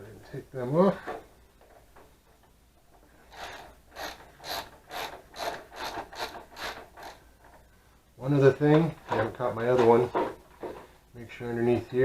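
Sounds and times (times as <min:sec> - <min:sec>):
ratchet wrench clicking: 0:03.3 - 0:07.2.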